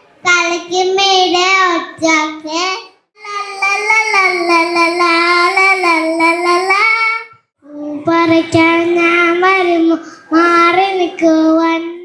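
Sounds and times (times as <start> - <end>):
child singing solo: 3.2 - 12.0.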